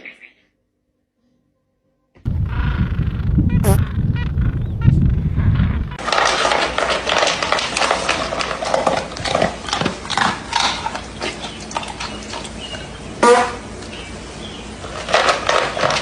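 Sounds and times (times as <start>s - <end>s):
animal breaking wind: 2.2s - 11.0s
low rumble: 2.3s - 6.0s.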